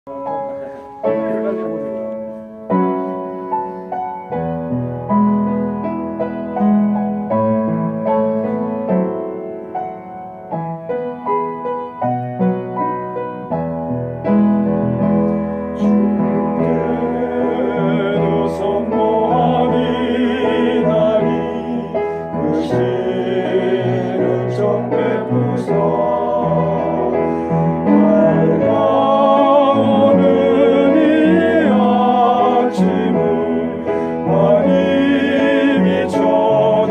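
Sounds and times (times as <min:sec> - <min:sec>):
piano playing: 0:00.0 - 0:36.9
vocal ensemble singing with vibrato: 0:15.0 - 0:36.9.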